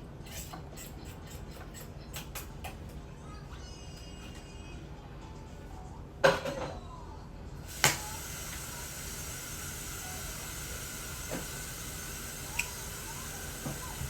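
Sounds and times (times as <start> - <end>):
water running from tap: 7.7 - 14.0.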